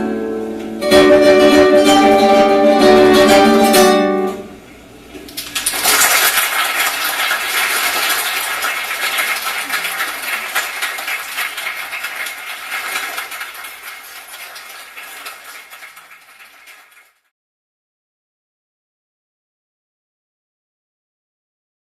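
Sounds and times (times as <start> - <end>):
audience clapping: 5.3 - 17.3.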